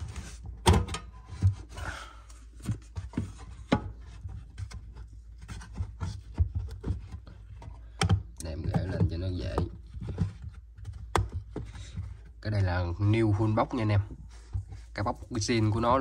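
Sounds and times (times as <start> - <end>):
hands tapping and rubbing box: 2.4 - 12.8.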